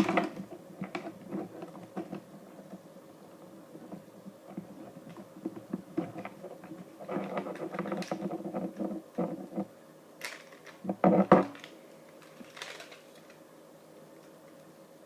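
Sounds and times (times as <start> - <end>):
small plastic clicks and rattles: 3.9 - 13.4.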